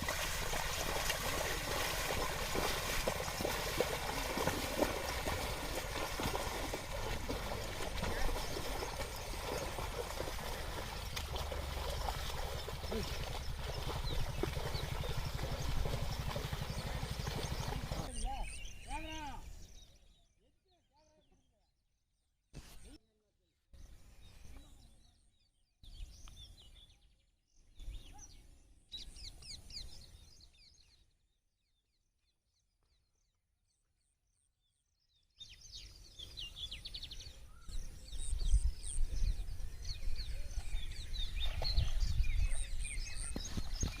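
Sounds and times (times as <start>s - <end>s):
birds chirping: 0.0s - 21.8s, 35.1s - 44.0s
low rumbling background: 6.8s - 18.1s.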